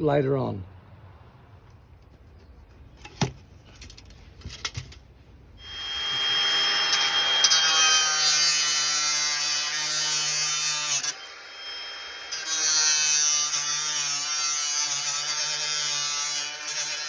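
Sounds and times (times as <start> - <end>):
angle grinder cutting plastic pipe: 5.6 - 17.0.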